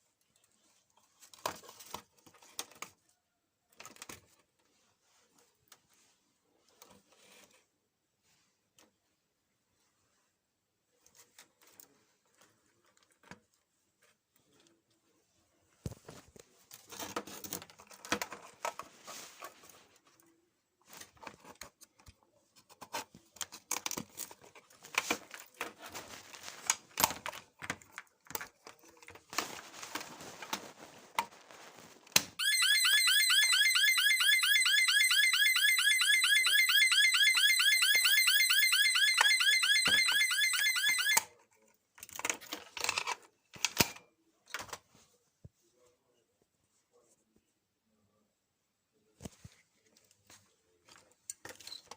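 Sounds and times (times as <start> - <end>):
fire alarm electronic warble: 32.4 - 41.2.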